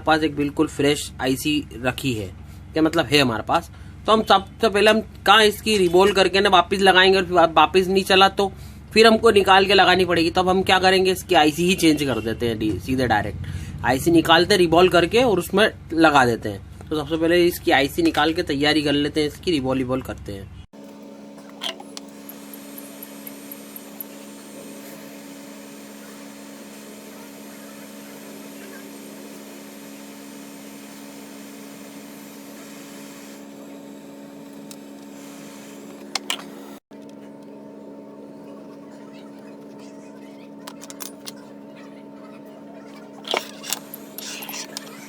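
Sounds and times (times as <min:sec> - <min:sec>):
electric fan hum: 0:20.8 - 0:45.0.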